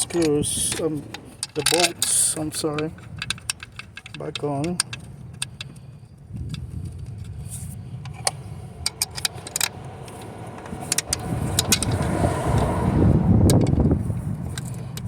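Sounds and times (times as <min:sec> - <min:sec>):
metal bolts and tool clinking: 0:00.0 - 0:05.8, 0:13.5 - 0:15.0
low rumbling noise: 0:00.0 - 0:15.0.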